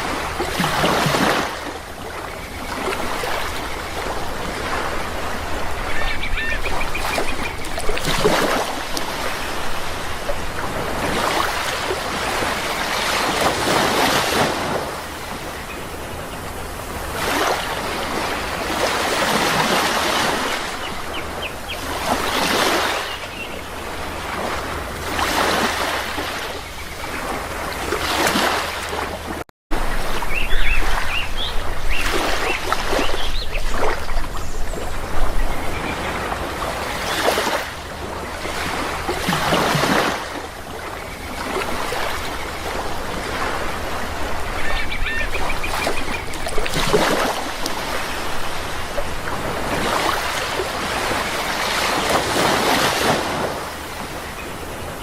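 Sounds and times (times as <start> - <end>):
sea waves washing onto shore: 0.0 - 55.0
bird calls: 2.2 - 8.5, 20.0 - 23.9, 30.0 - 36.3, 40.8 - 47.3.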